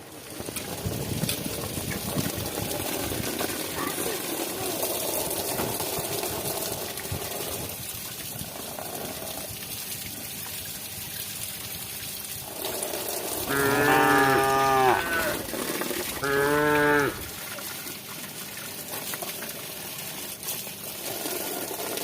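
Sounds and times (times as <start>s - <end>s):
cow mooing: 13.4s - 15.5s, 16.2s - 17.2s.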